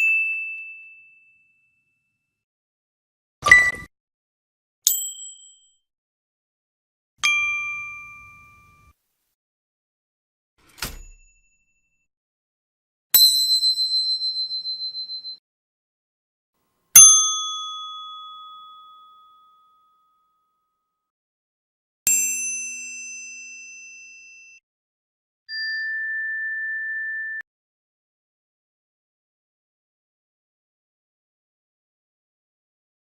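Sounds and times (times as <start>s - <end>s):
bell trill: 25.5s - 27.4s.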